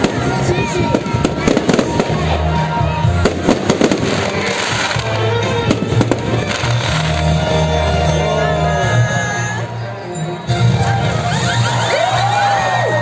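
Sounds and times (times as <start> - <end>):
fireworks banging: 0.0 - 7.9
loud music over speakers: 0.0 - 13.0.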